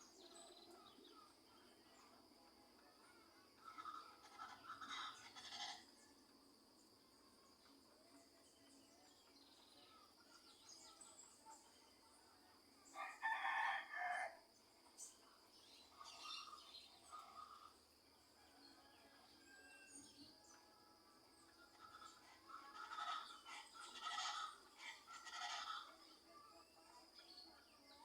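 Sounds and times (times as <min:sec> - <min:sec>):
rooster crowing: 0:13.0 - 0:14.4
small birds chirping: 0:14.6 - 0:17.8.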